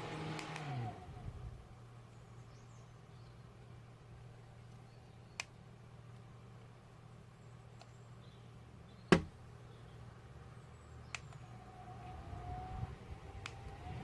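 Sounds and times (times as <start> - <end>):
sharp click: 0.3 - 0.7.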